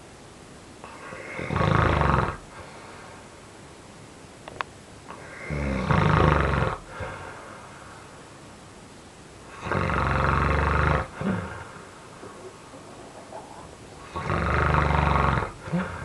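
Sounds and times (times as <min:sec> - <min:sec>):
man snoring loudly: 0:00.9 - 0:02.4, 0:05.2 - 0:07.0, 0:09.5 - 0:11.6, 0:14.0 - 0:16.0
quiet breathing: 0:02.5 - 0:03.5, 0:05.1 - 0:05.8, 0:06.7 - 0:08.4, 0:10.8 - 0:16.0.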